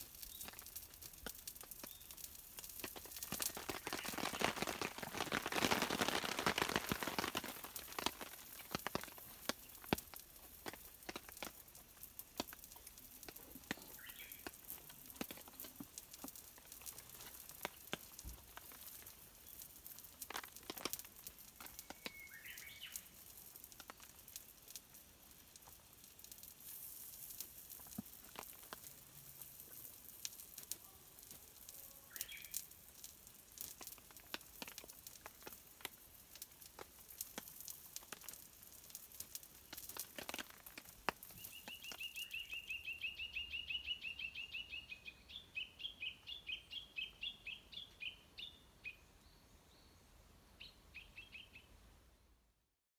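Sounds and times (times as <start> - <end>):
campfire crackling and popping: 0.0 - 44.8
bird chirps: 13.8 - 14.5, 21.7 - 23.1, 41.4 - 51.8.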